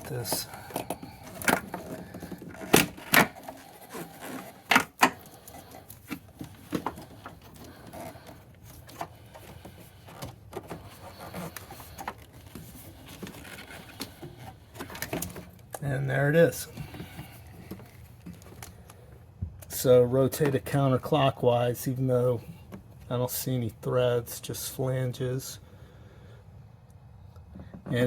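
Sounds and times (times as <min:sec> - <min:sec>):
rustling: 0:00.0 - 0:19.2.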